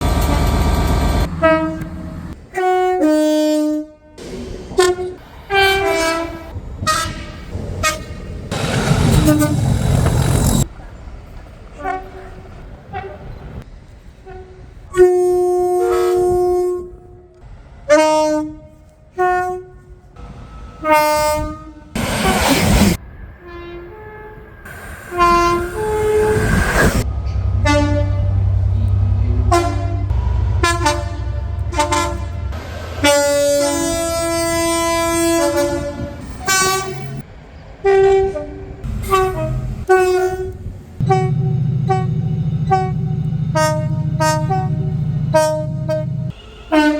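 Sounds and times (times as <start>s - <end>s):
train two-tone horns: 0.0s - 10.9s, 11.7s - 13.4s, 14.1s - 46.9s
low train rumble: 0.0s - 46.9s
loud rush of noise: 6.6s - 11.3s, 22.0s - 23.4s, 24.4s - 27.3s, 30.1s - 34.0s.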